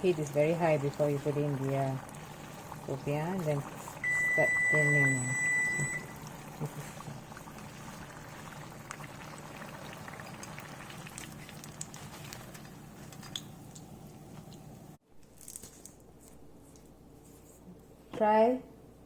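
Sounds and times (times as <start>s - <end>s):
oil sizzling and bubbling: 0.0s - 15.0s.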